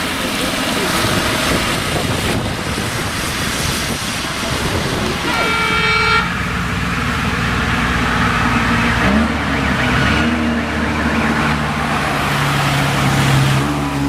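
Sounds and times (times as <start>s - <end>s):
racing car engine revving: 7.6s - 14.0s.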